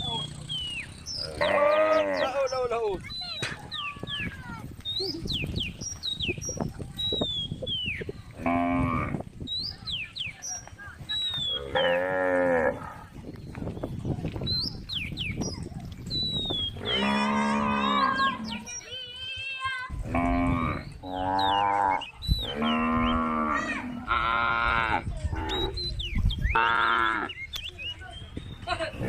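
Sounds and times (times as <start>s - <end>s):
cows mooing: 1.2s - 2.5s, 8.4s - 9.2s, 11.6s - 13.0s, 16.8s - 18.8s, 20.0s - 25.8s.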